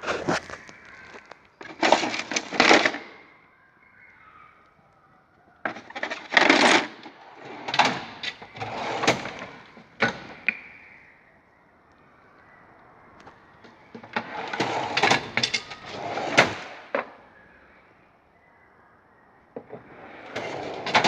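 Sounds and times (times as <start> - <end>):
drawers sliding open and shut: 1.6 - 3.2, 5.7 - 10.6, 14.0 - 17.1, 19.6 - 21.0.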